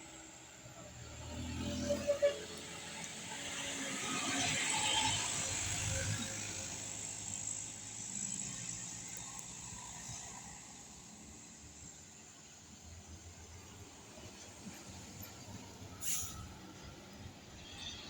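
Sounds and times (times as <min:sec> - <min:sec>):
vehicle passing by: 0:00.9 - 0:07.2.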